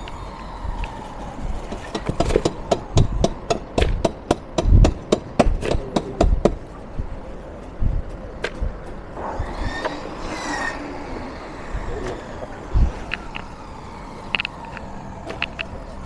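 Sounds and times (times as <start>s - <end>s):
sharp knocks: 1.6s - 6.7s.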